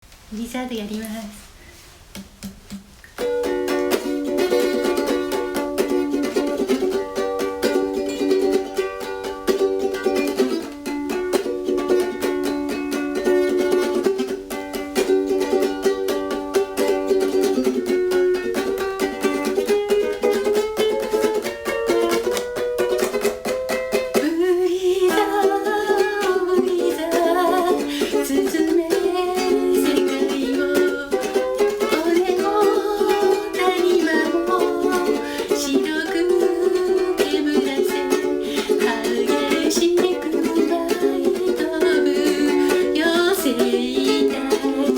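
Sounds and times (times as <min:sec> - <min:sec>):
ukulele strumming: 0:01.8 - 0:44.9
person singing: 0:24.1 - 0:44.9.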